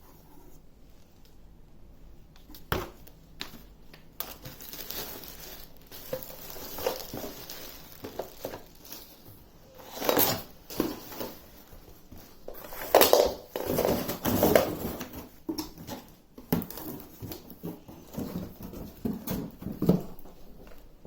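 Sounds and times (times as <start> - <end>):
packaging rustling: 2.8 - 20.9
plastic parts knocking: 5.9 - 8.8.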